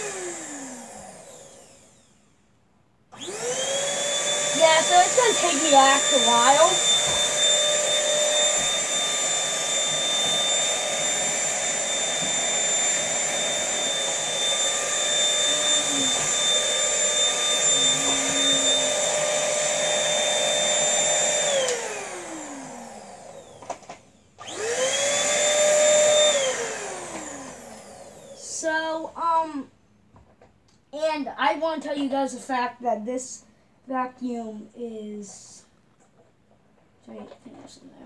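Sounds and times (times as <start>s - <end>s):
handheld vacuum whining: 0.0s - 2.4s, 3.1s - 29.0s.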